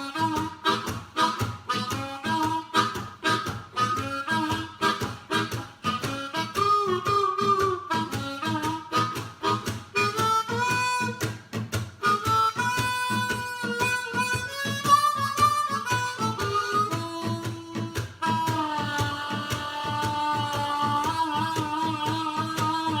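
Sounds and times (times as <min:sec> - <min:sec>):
harmonica playing blues: 0:00.0 - 0:23.0
rhythmic accompaniment: 0:00.0 - 0:23.0.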